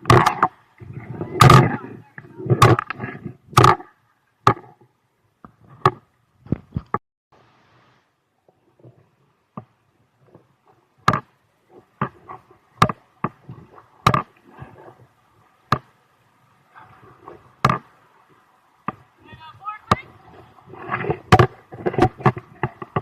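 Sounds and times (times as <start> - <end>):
rustling: 16.7 - 23.0.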